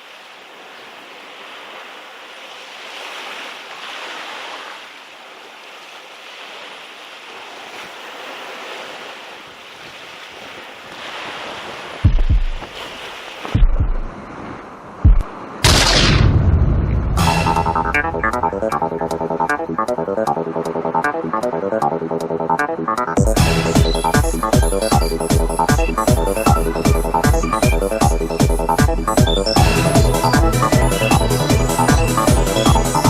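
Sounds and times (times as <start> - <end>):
surf washing against rocks: 0.0 - 16.0
loud whoosh: 15.6 - 19.5.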